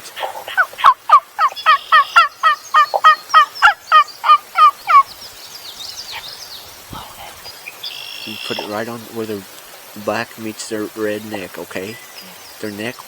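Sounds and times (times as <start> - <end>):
turkey yelps: 0.0 - 5.1.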